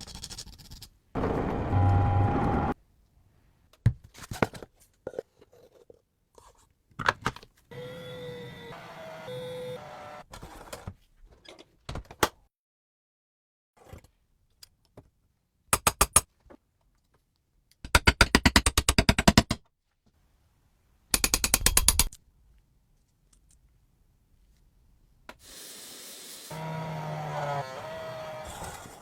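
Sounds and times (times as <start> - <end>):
ratchet-like mechanical clicks: 21.2 - 22.2.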